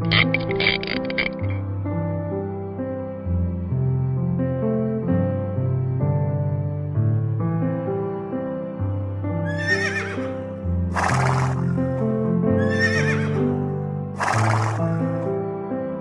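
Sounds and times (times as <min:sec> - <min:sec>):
background music: 0:00.0 - 0:16.0
animal wavering high call: 0:09.5 - 0:10.2, 0:12.6 - 0:13.4.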